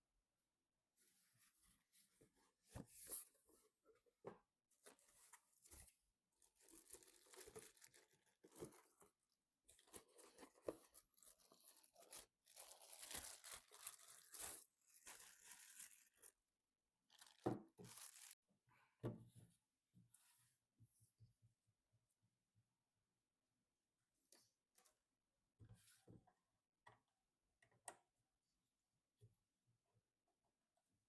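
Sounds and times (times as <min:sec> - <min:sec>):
plastic packaging tearing and crinkling: 0:11.6 - 0:16.3, 0:17.1 - 0:18.4.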